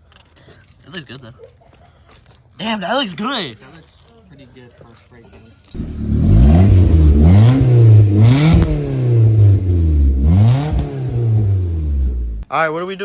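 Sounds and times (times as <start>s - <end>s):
car engine revving: 5.8s - 12.5s.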